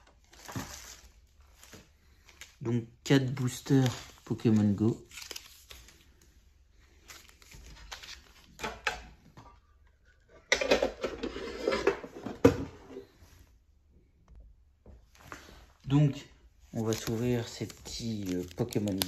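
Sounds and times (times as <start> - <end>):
packaging handling noise: 0.0 - 2.6, 16.7 - 19.0.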